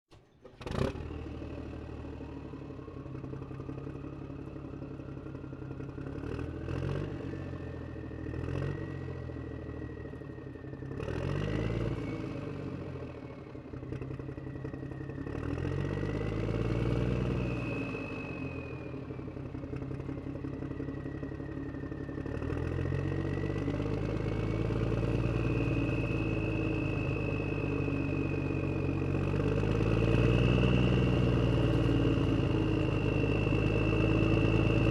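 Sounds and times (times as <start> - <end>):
vehicle engine revving and idling: 0.1 - 34.9
thin whine climbing in pitch: 20.0 - 34.9.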